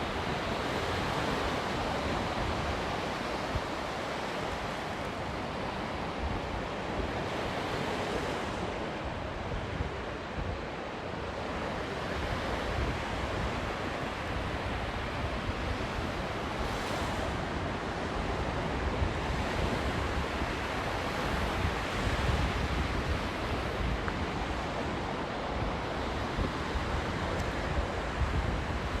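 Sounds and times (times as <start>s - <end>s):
wind buffeting microphone: 11.9s - 29.0s.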